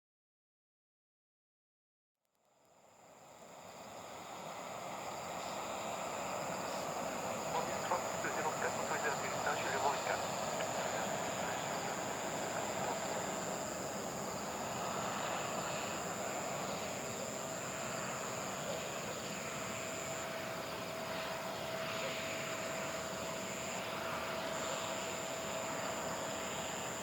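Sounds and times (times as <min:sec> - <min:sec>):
jet engine whine: 0:02.6 - 0:27.0
distant jet engines rumbling: 0:03.0 - 0:27.0
insects chirring: 0:03.4 - 0:27.0.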